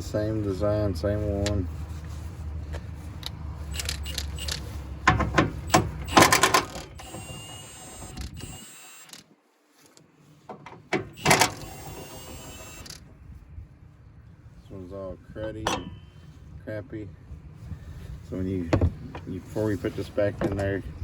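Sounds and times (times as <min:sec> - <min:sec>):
metal parts clinking and rattling: 0:05.6 - 0:09.2.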